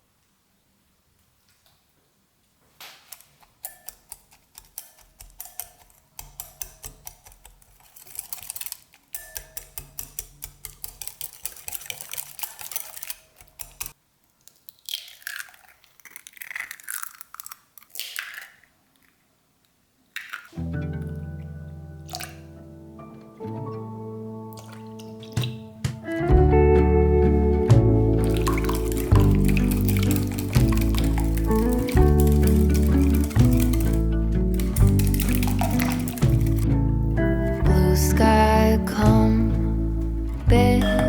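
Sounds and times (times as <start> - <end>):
utensils clicking against a bowl: 3.1 - 14.0, 28.2 - 36.8.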